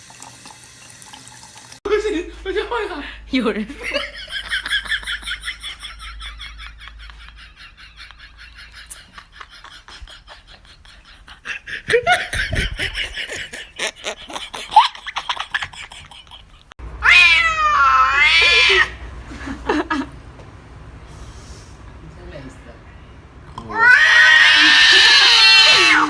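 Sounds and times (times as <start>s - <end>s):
cat yowling: 17.0s - 19.0s, 23.7s - 26.0s.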